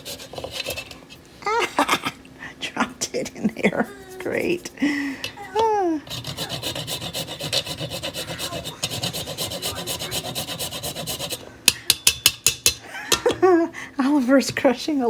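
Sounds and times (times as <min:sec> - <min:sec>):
nutmeg rasping on grater: 0:00.0 - 0:01.0, 0:06.0 - 0:11.5.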